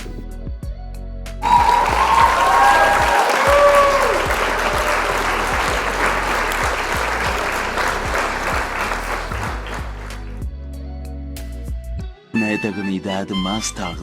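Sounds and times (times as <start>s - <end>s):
background music: 0.0s - 14.0s
whistles from crowd: 1.4s - 10.2s
crowd applauding and cheering: 1.4s - 10.4s.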